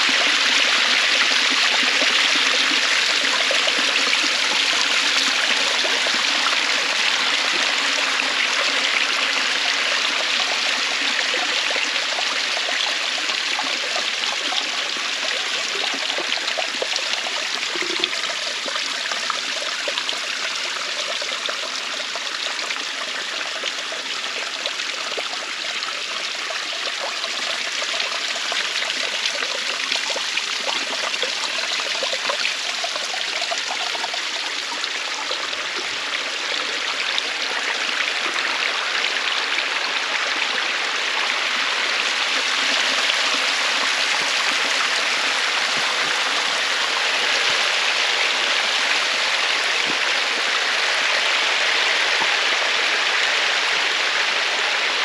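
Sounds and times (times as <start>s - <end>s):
running water rushing: 0.0s - 55.0s.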